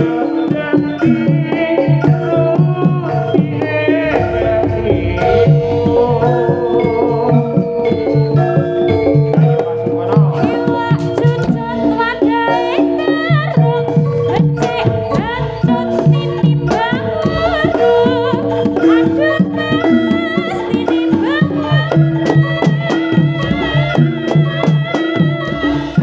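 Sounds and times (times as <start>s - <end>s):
high wavering melody: 0.0s - 24.6s
hand drums: 0.0s - 26.0s
metallophone notes: 0.0s - 26.0s
gong notes: 3.8s - 11.6s.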